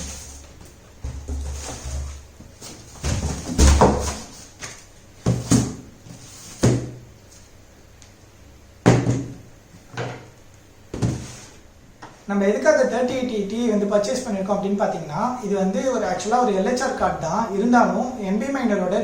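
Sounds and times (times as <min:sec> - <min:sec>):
cardboard boxes thumping: 0:01.0 - 0:04.3, 0:05.2 - 0:05.8, 0:11.0 - 0:11.4.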